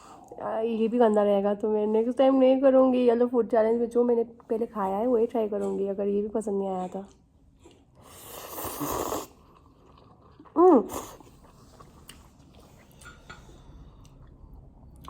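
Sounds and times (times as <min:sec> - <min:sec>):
faint chewing: 0:06.7 - 0:15.0
noodles slurped: 0:07.7 - 0:12.9.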